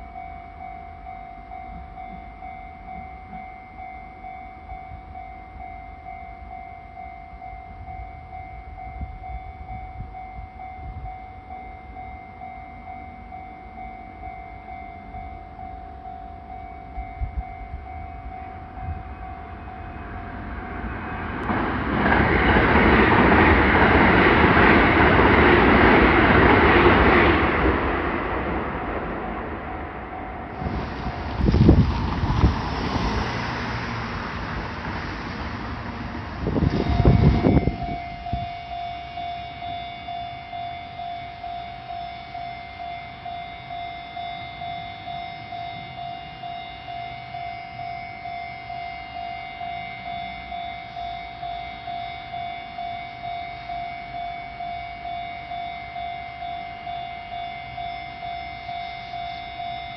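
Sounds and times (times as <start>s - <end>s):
level-crossing alarm ringing: 0.0s - 59.9s
train rushing past: 16.6s - 40.0s.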